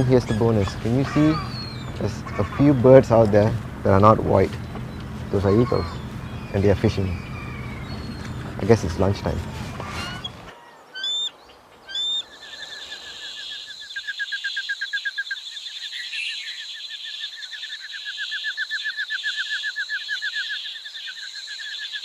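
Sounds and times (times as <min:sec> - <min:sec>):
chorus of rapid trilling: 0:00.0 - 0:10.5
loud bird calls: 0:00.0 - 0:22.0.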